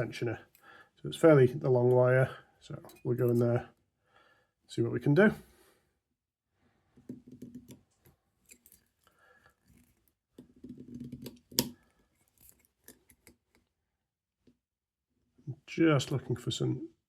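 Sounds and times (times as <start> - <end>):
lock pick scraping and clicking: 7.1 - 13.7.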